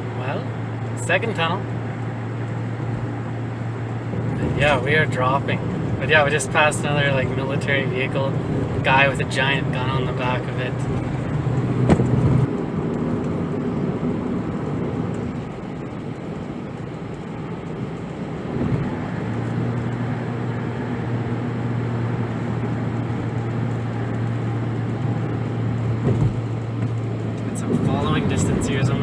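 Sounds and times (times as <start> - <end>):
low engine hum: 0.0 - 29.0
tyre and wind noise: 10.7 - 29.0.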